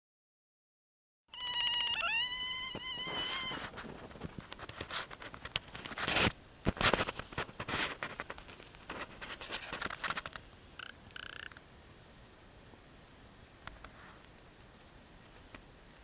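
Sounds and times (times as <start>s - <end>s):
rustling bursts: 1.7s - 10.4s.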